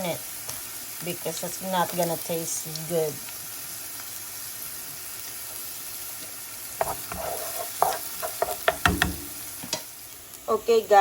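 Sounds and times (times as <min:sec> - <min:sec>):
onion sizzling in a frying pan: 0:00.0 - 0:11.0
utensil scraping a pan: 0:06.8 - 0:09.1.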